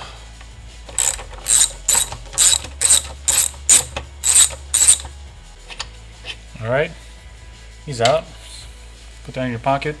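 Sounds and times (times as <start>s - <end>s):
ratchet wrench clicking: 1.0s - 5.1s.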